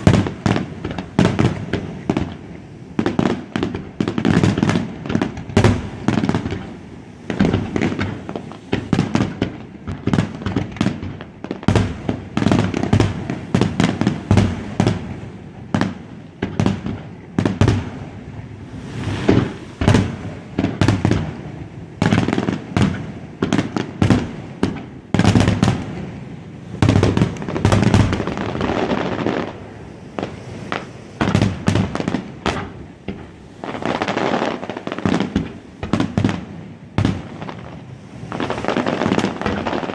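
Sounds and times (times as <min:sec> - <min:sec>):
fireworks bursting: 0:00.0 - 0:36.4, 0:37.0 - 0:39.9
low rumble: 0:18.4 - 0:20.6.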